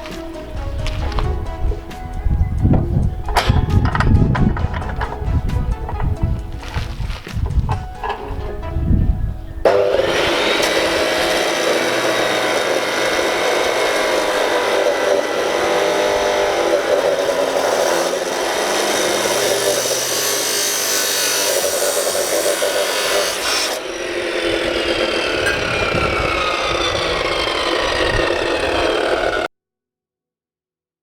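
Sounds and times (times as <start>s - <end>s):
power tool cutting steel: 3.2s - 8.4s, 9.6s - 29.5s
tool winding down whine: 9.7s - 29.5s.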